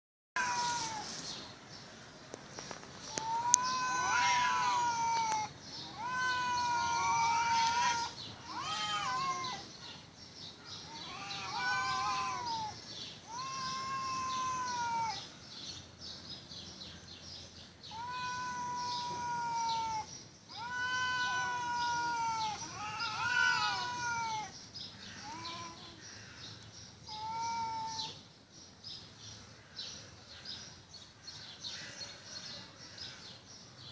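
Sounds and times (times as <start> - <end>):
cats yowling: 0.4 - 1.1, 3.1 - 9.7, 10.9 - 15.3, 17.9 - 24.6, 25.2 - 26.0, 27.1 - 28.2.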